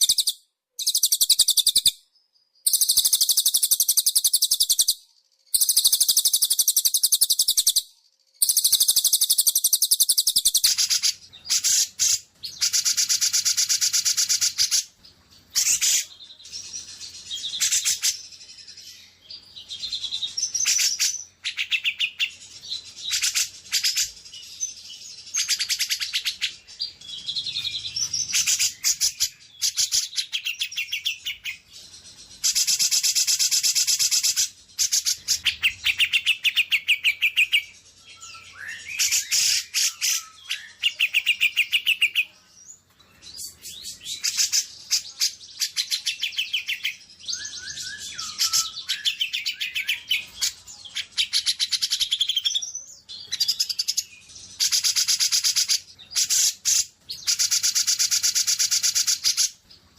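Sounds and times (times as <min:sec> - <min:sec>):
songbird chattering trills: 0:02.7 - 0:04.9, 0:08.4 - 0:14.8.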